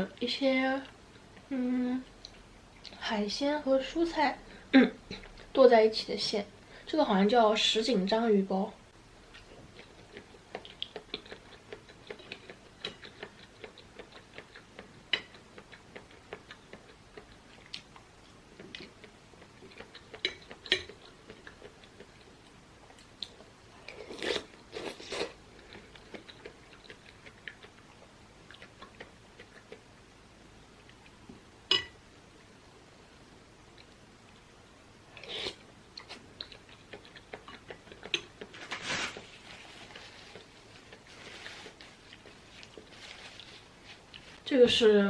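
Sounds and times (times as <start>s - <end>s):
person chewing food: 9.3s - 30.0s, 35.1s - 38.6s, 39.2s - 44.4s.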